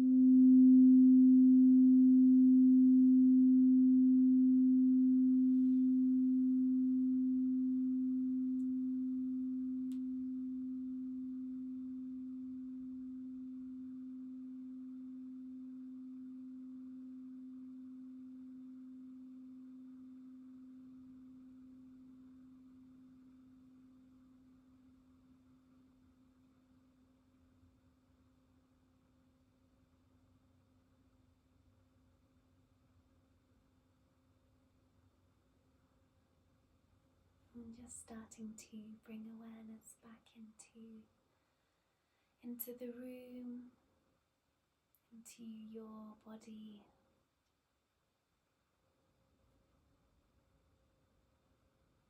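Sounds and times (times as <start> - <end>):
singing bowl ringing: 0.0 - 24.5.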